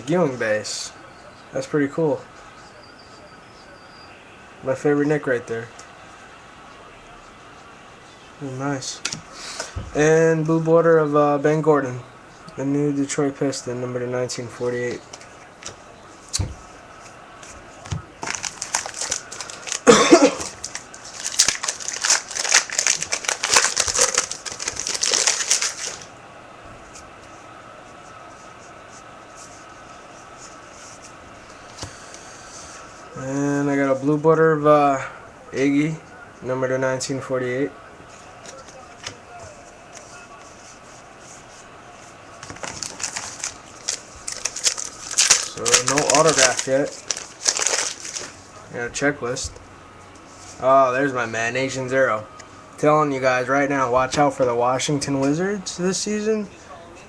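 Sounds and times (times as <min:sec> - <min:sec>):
cards and packaging rustling: 0:17.8 - 0:26.1, 0:42.4 - 0:48.5
wrapper tearing and crinkling: 0:18.2 - 0:26.1, 0:42.4 - 0:48.4.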